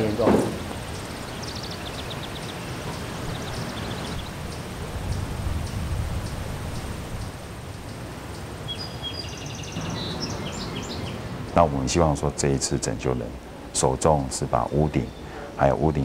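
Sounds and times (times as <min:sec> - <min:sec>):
high bird chirps: 0:00.6 - 0:05.2, 0:08.7 - 0:11.7.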